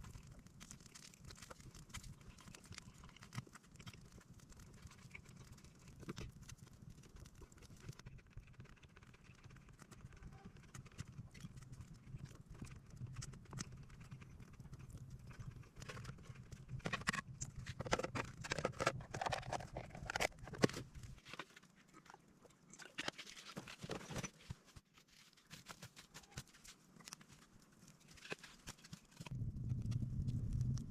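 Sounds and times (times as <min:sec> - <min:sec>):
low steady hum: 0:29.1 - 0:30.9.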